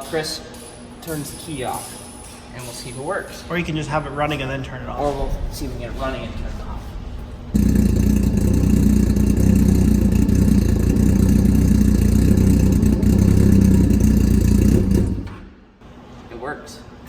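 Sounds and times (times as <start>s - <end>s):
motorcycle engine idling: 7.3s - 15.5s.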